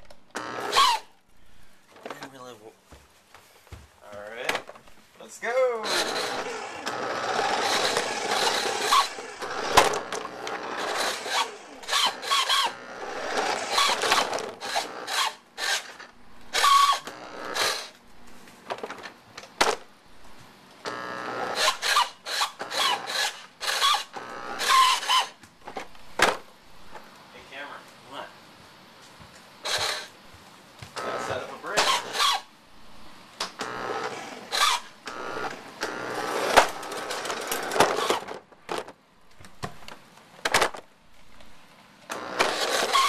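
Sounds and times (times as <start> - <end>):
toy car electric motor whirring: 0.3 - 1.1, 5.9 - 18.0, 20.9 - 25.4, 29.6 - 30.1, 31.8 - 32.5, 33.6 - 38.4, 42.1 - 43.0.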